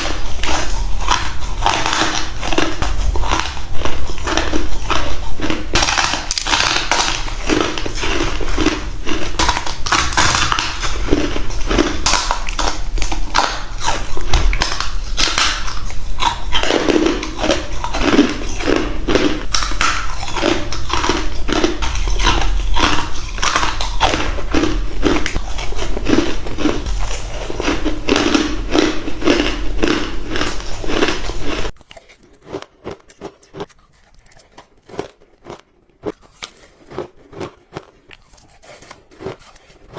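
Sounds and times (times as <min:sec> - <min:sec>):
ice crunching in mouth: 0:00.0 - 0:39.9.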